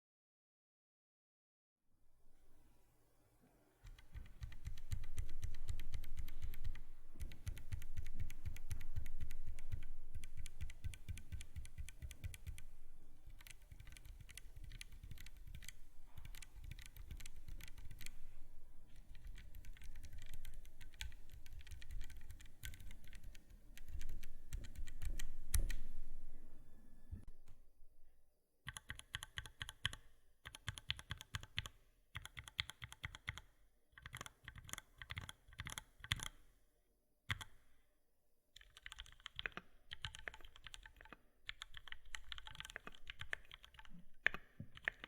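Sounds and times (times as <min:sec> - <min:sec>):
typing on mechanical keyboard: 0:03.9 - 0:18.2, 0:19.0 - 0:25.8, 0:28.7 - 0:36.4, 0:37.3 - 0:37.5, 0:38.6 - 0:45.0.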